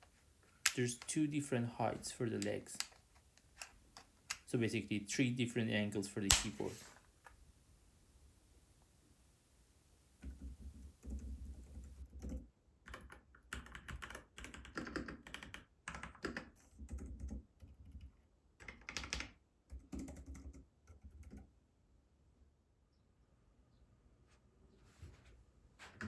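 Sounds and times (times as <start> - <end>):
mechanical keyboard typing: 11.0 - 21.4.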